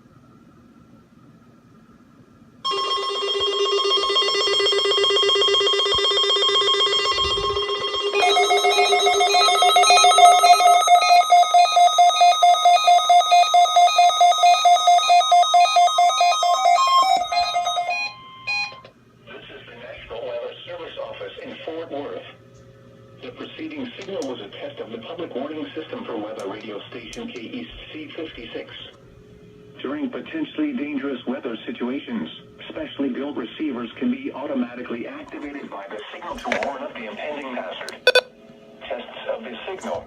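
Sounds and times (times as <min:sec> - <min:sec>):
pulsing electronic alert tone: 0:38.1 - 0:38.3.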